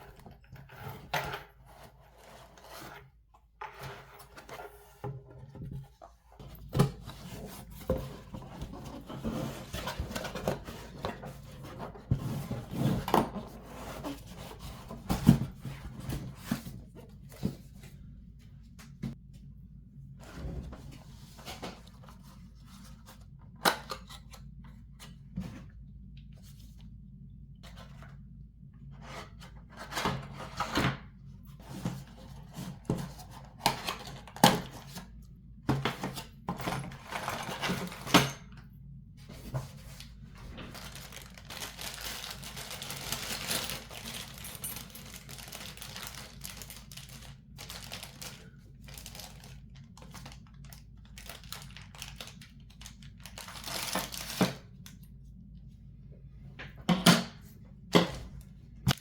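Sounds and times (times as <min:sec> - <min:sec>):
plastic and paper crinkling: 0:39.4 - 0:54.6.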